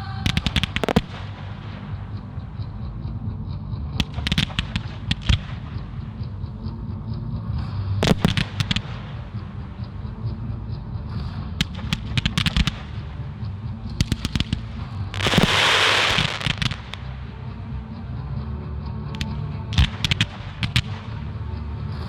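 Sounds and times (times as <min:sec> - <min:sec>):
loud firework hiss: 0:15.1 - 0:17.1
firework shells bursting: 0:15.2 - 0:17.1.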